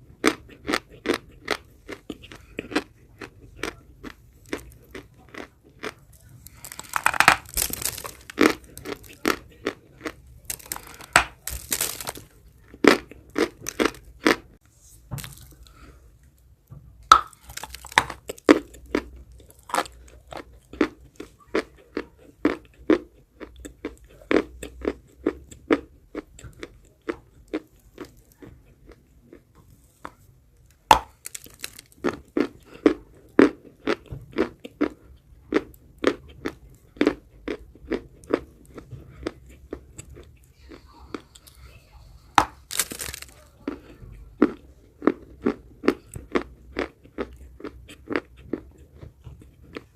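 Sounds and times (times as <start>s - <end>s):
rhythmic chewing: 0.0s - 49.9s
chalk crunching: 6.5s - 9.4s, 10.0s - 12.4s, 42.4s - 43.4s.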